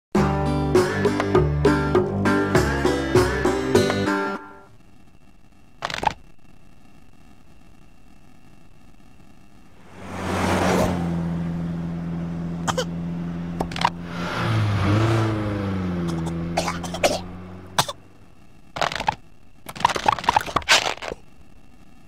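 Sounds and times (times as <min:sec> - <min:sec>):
car engine running: 0:09.8 - 0:19.2
cartoon characters coughing: 0:12.6 - 0:13.0, 0:16.0 - 0:18.0.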